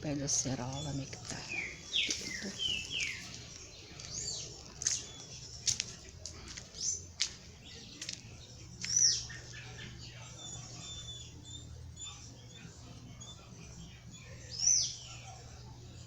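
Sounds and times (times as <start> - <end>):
birds chirping and whistling: 0.0 - 16.0.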